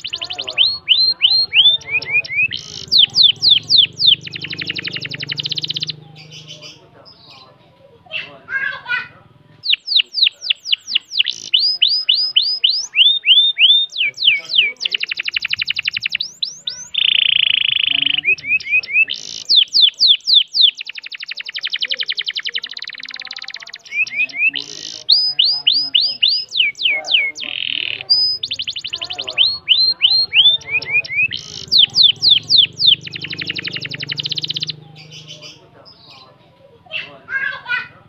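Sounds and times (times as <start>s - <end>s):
canary singing: 0.0s - 38.0s.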